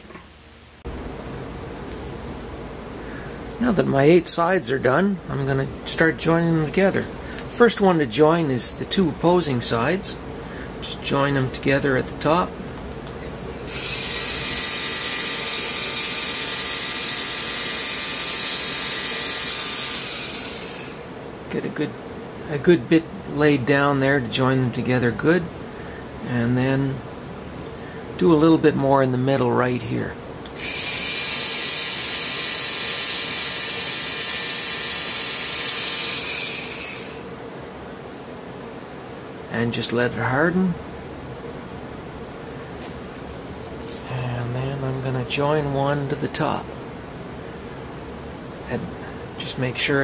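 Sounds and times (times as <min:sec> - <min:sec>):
small motor whirring: 0:13.4 - 0:21.1, 0:30.5 - 0:37.3.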